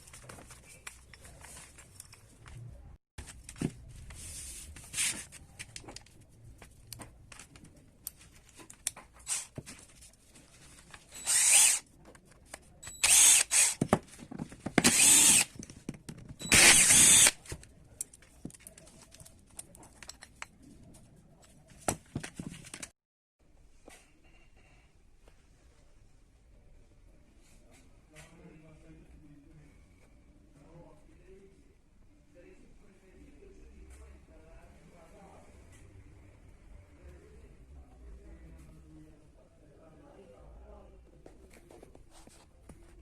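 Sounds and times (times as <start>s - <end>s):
workshop power tool bursts: 16.4s - 17.4s.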